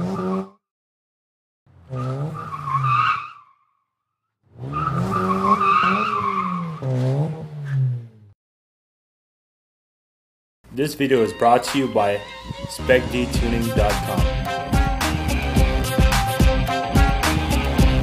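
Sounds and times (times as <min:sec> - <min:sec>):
tires squealing: 0:00.0 - 0:00.5, 0:01.7 - 0:03.7, 0:04.5 - 0:08.2
car engine revving: 0:01.7 - 0:03.1, 0:04.5 - 0:08.3, 0:13.0 - 0:18.0.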